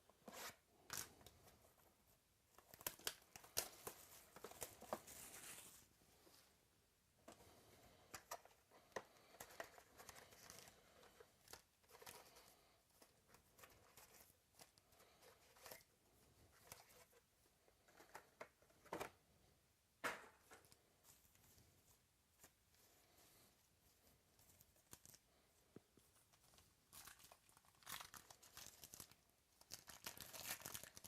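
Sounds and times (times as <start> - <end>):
wrappers and cards crinkling: 2.6 - 5.9, 8.2 - 17.2, 24.4 - 25.4, 26.0 - 31.0.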